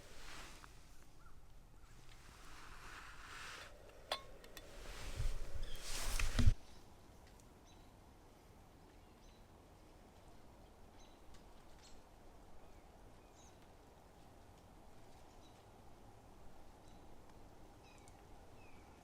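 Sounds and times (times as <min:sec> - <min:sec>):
quiet outdoor ambience: 0:00.0 - 0:19.0
faint bird chirps: 0:17.8 - 0:19.0.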